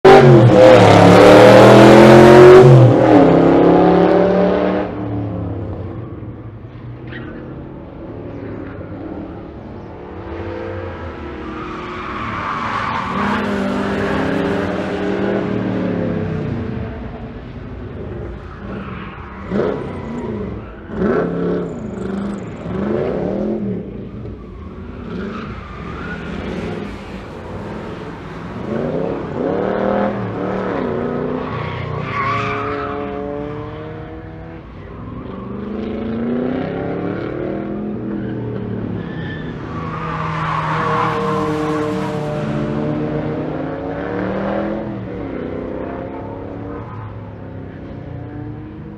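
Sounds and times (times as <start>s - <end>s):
race car engine accelerating: 0.1s - 5.1s.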